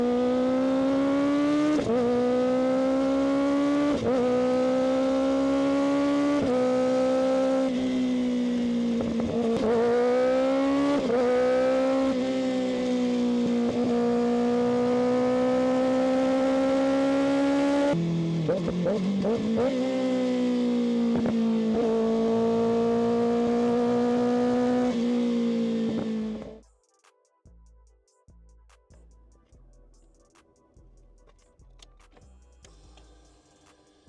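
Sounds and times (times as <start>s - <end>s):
motorcycle engine accelerating: 0.0s - 26.6s.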